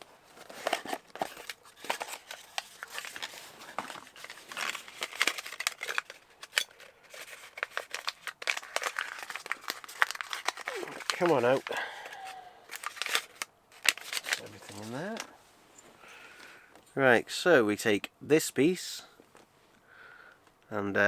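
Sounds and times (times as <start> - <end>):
plastic packaging crinkling: 0.0 - 16.5.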